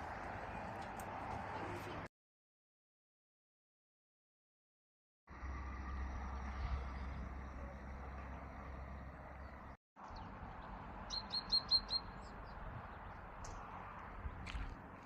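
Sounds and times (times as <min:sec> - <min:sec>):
bird chirping: 0:08.9 - 0:13.6.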